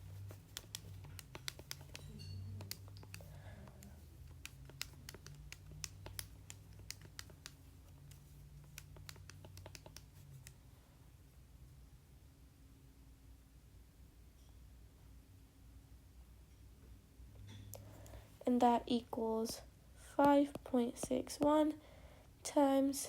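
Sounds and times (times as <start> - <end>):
calculator keys clicking: 0.0 - 10.6.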